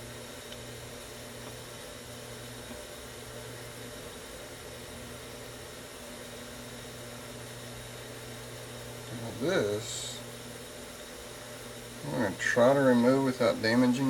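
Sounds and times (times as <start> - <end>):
low electrical hum: 0.0 - 14.0
steady hiss: 6.2 - 14.0.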